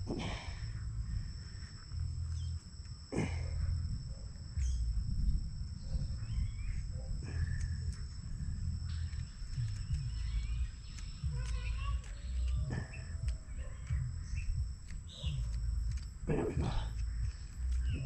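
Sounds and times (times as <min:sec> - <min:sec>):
high insect chorus: 0:00.0 - 0:18.0
low microphone rumble: 0:00.0 - 0:18.0
faint clicks: 0:07.3 - 0:18.0.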